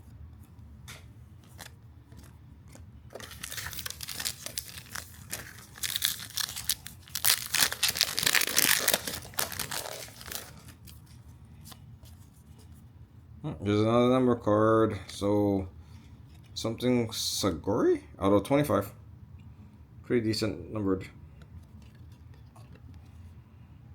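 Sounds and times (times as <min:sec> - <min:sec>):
wrapper tearing and crinkling: 0:03.1 - 0:11.1.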